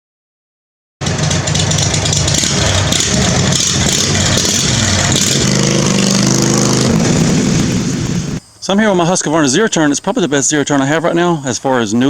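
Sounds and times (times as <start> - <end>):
mower engine revving: 1.0 - 8.4.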